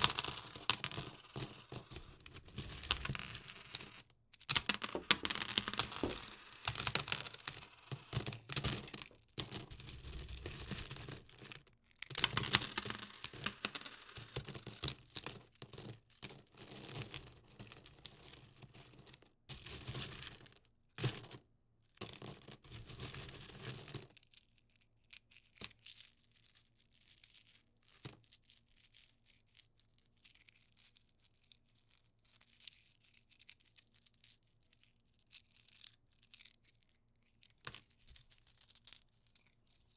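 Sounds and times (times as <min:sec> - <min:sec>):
coins clinking and jingling: 0:00.0 - 0:11.2, 0:12.2 - 0:14.8.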